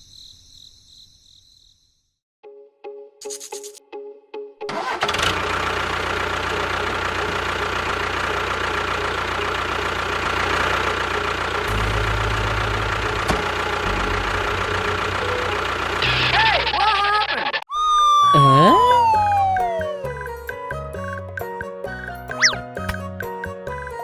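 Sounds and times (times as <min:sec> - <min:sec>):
small engine running: 0:04.7 - 0:17.6.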